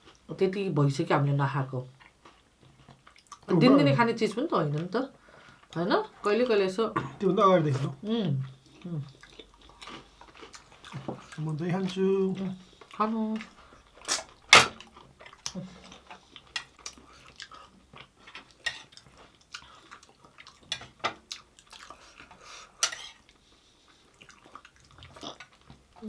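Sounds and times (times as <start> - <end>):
chewing: 1.8 - 3.5, 7.0 - 26.0
dishes and utensils clinking: 14.5 - 14.8.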